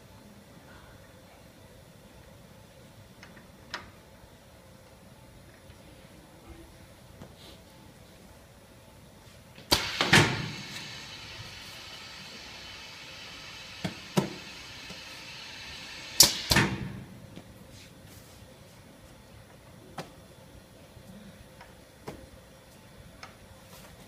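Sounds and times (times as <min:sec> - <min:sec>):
steady machinery hiss: 0:09.2 - 0:19.4.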